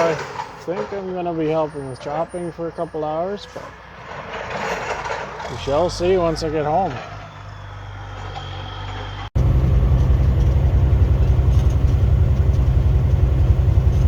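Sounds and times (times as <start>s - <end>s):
truck driving with low rumble: 1.4s - 14.0s
diesel engine idling: 9.4s - 14.0s.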